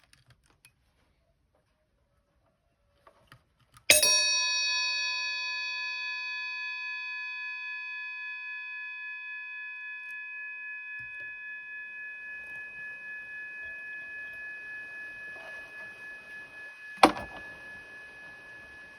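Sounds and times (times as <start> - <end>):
bell ringing: 3.9 - 18.9
sharp knock: 17.0 - 17.5.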